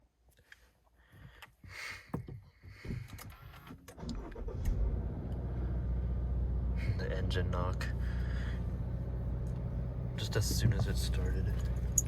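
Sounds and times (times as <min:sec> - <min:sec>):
car engine starting and running: 0:03.5 - 0:12.0.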